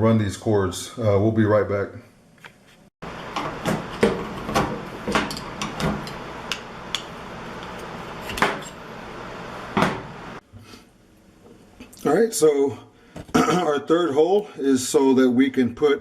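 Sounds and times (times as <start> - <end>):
steady background hum: 0.2 - 15.0
hard objects knocking and clicking: 3.2 - 8.7.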